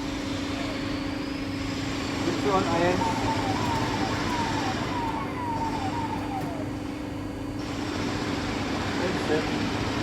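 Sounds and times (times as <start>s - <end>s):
lathe humming: 0.0s - 7.8s
short falling whines: 2.4s - 7.2s.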